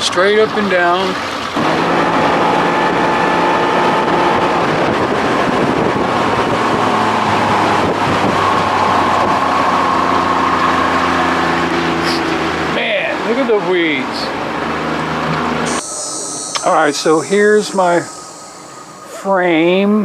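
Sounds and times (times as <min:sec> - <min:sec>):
wind buffeting microphone: 0:00.0 - 0:15.8
outboard motor running: 0:00.0 - 0:19.8.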